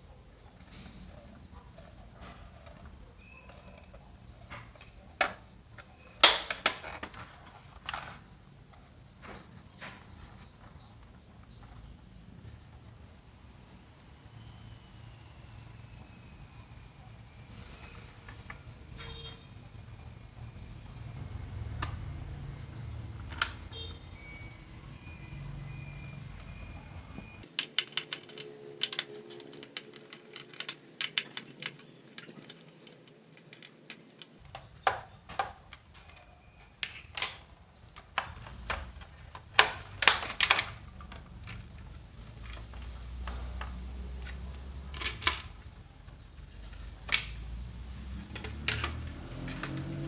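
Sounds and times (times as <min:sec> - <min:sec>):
small plastic parts clicking: 0:27.4 - 0:50.0.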